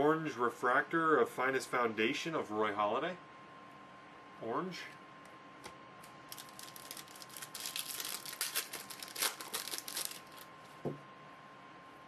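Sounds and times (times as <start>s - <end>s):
plastic wrapper crinkling and tearing: 6.0s - 10.5s.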